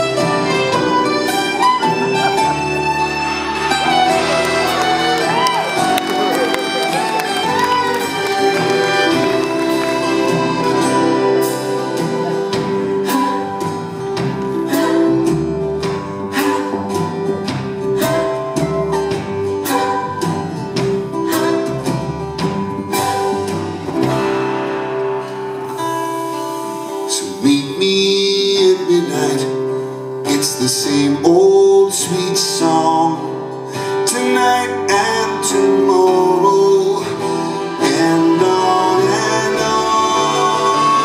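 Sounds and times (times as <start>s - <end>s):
sustained string notes: 0.0s - 17.7s
guitar strumming: 0.0s - 41.0s.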